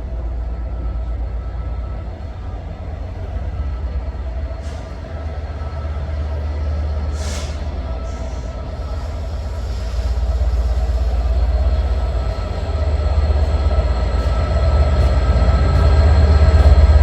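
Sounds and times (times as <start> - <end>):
diesel train engine rumbling: 0.0 - 17.0
air brake hisses: 4.6 - 5.2, 7.1 - 11.4.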